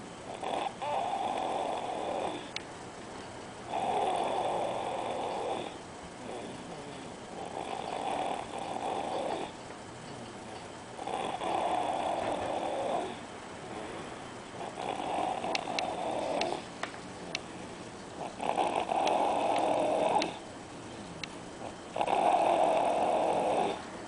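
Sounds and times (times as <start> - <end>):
person snoring: 0.3 - 2.5, 3.7 - 9.5, 11.0 - 13.9, 14.6 - 16.6, 18.2 - 20.4, 21.6 - 23.8.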